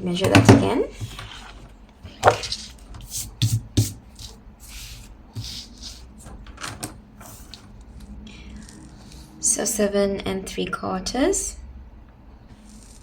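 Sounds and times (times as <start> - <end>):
paper rustling: 1.0 - 8.1.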